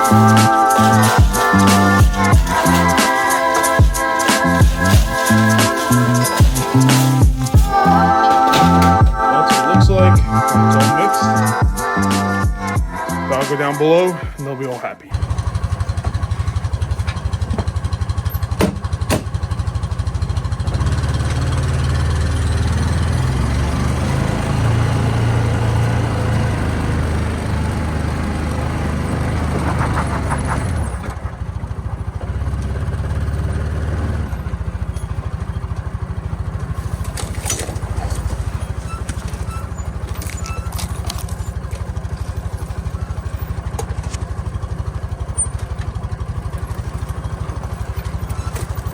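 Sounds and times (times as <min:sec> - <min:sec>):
utility vehicle engine running: 0:00.0 - 0:48.9
sharp knocks: 0:18.6 - 0:19.4.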